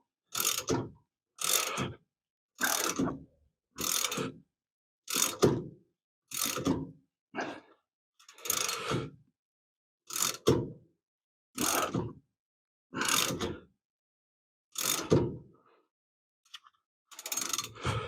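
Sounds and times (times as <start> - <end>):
ratchet wrench clicking: 17.1 - 17.7.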